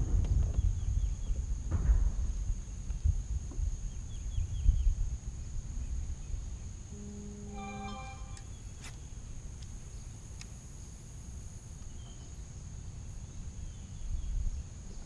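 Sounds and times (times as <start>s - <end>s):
high-pitched insect drone: 6.9s - 8.7s.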